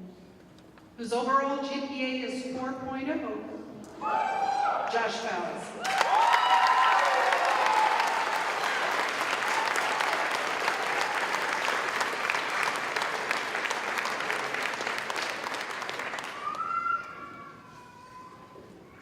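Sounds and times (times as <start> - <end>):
audience applauding: 5.8 - 17.2.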